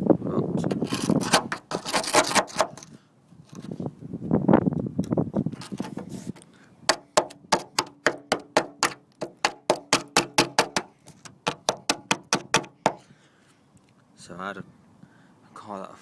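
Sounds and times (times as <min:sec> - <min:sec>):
rough scraping on metal: 0:00.6 - 0:02.9, 0:05.5 - 0:06.4
hammer striking steel: 0:06.9 - 0:10.9.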